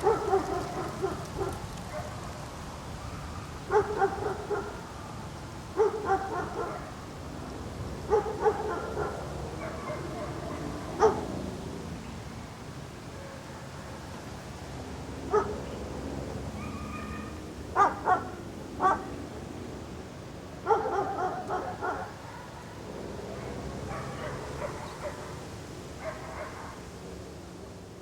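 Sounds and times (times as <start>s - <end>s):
dog barking: 0.0s - 2.2s, 3.7s - 4.8s, 5.8s - 7.0s, 8.1s - 11.3s, 15.3s - 15.6s, 16.6s - 19.1s, 20.6s - 25.4s, 26.0s - 26.8s
low outdoor background rumble: 0.0s - 28.0s.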